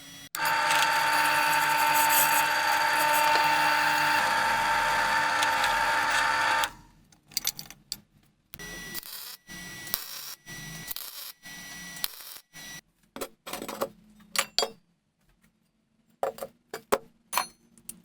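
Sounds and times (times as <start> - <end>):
power tool motor whining: 0.4 - 6.8
sharp clicks: 0.4 - 6.8.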